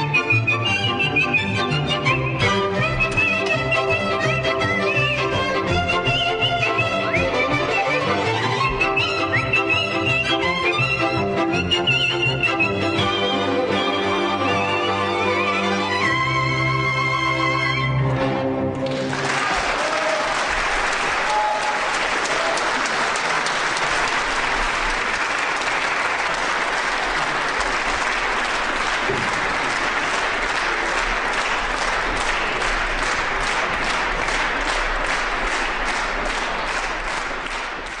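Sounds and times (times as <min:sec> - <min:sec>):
audience applauding: 0:18.8 - 0:38.0.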